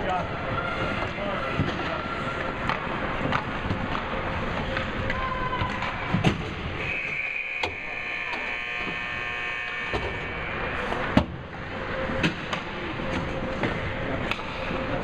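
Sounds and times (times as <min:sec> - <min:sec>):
arena hubbub: 0:00.0 - 0:15.0
hockey sticks and puck knocking: 0:02.6 - 0:06.5
high steady tone: 0:06.8 - 0:11.0.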